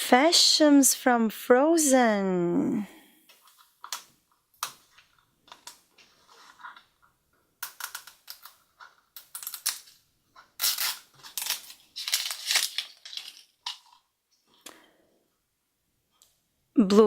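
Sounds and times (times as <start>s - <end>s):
plastic packaging crinkling: 7.6s - 14.1s.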